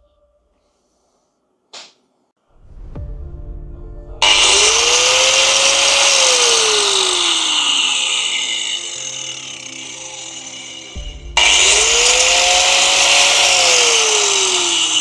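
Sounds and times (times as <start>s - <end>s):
angle grinder motor whine: 4.2s - 15.0s.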